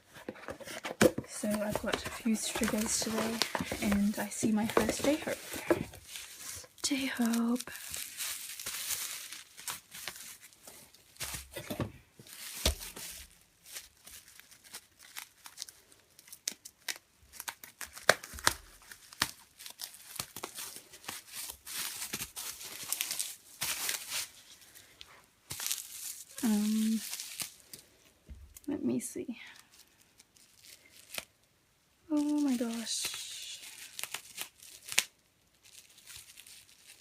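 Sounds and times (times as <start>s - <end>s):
plastic cases clicking: 0.2s - 6.0s
packaging tearing and crinkling: 0.2s - 24.8s, 25.5s - 27.8s, 29.6s - 31.4s, 32.1s - 37.0s.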